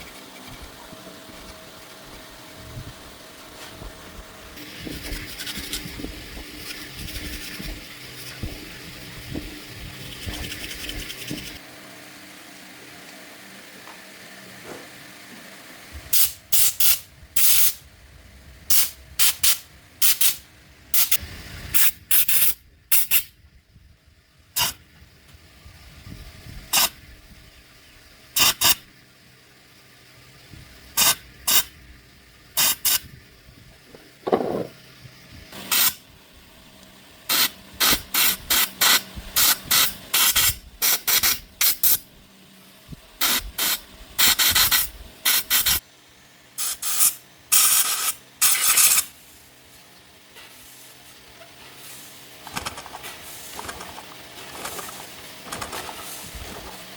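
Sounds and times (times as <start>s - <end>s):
short hissing spray bursts: 16.1s - 17.8s, 18.7s - 20.4s, 21.0s - 23.3s, 28.4s - 28.8s, 31.0s - 31.7s, 32.6s - 33.0s, 35.6s - 36.0s, 37.3s - 42.0s, 43.2s - 45.8s, 46.6s - 49.5s, 50.5s - 51.0s, 51.8s - 52.2s.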